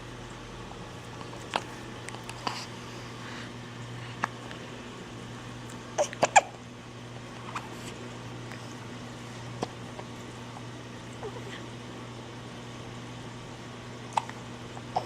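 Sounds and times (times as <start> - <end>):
baby wombat hiccuping: 6.0 - 6.6.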